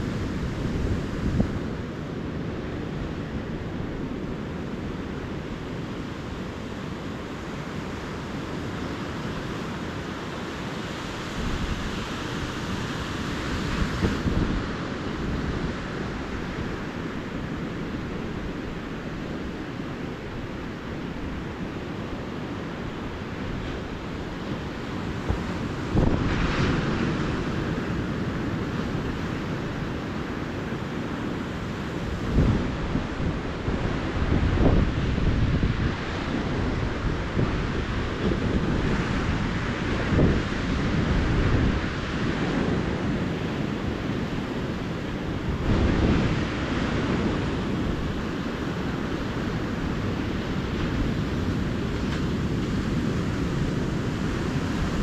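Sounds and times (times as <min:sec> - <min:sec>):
ocean surf washing onto beach: 0:00.0 - 0:55.0
waves breaking: 0:00.0 - 0:55.0.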